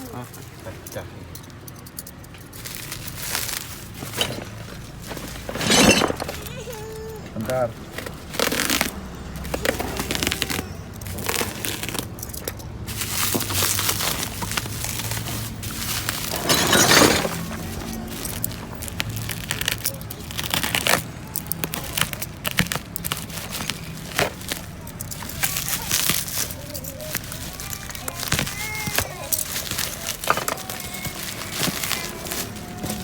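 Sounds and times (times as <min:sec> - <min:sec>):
scraping rustle: 0:02.6 - 0:06.7, 0:12.9 - 0:21.0, 0:23.0 - 0:33.0
broken glass clinking: 0:05.4 - 0:06.5, 0:16.3 - 0:17.6.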